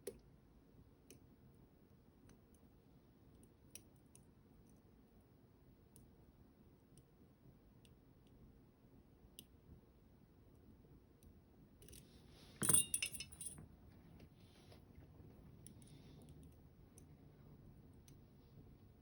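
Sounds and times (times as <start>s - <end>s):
metal clinks and jingling: 12.6s - 13.6s.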